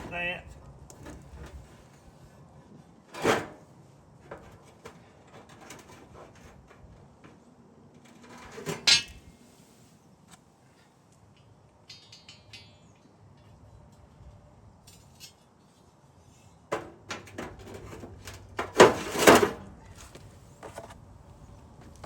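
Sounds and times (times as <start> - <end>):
metal plow blade clanking: 8.4 - 9.3
light metal jingling: 11.8 - 13.4.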